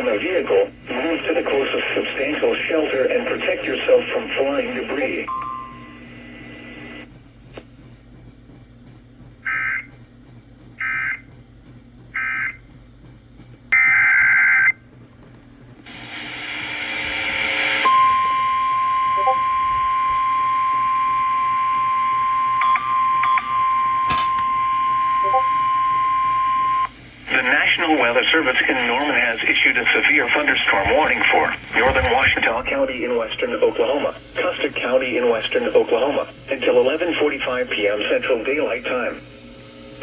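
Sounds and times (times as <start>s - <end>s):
radio hiss: 0.0s - 5.3s, 27.2s - 39.3s.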